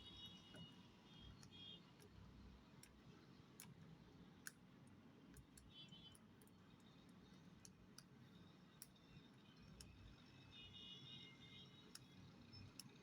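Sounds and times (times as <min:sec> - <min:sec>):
faint small clicks: 0:01.4 - 0:02.2, 0:02.8 - 0:03.8, 0:04.4 - 0:08.2, 0:08.8 - 0:10.0, 0:11.8 - 0:13.0.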